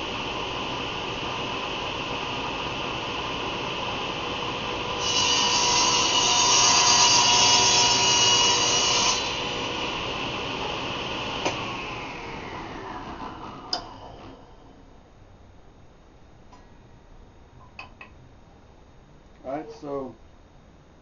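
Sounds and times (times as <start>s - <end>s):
table saw cutting wood: 4.4s - 14.8s
motor winding down: 10.4s - 15.0s.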